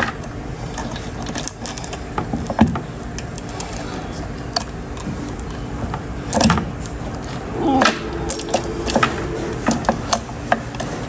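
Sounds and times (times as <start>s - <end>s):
saw chain clicking and rattling: 0.8s - 2.0s
steady low hum: 2.7s - 10.8s.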